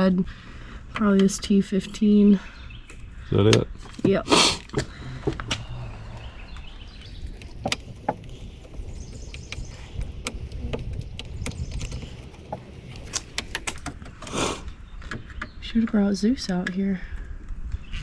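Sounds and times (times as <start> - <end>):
screwdriver clicks and taps: 7.1 - 13.9.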